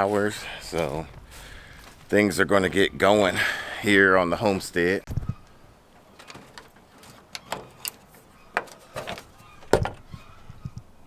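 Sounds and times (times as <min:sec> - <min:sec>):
sharp clicks and knocks: 0:05.9 - 0:10.1.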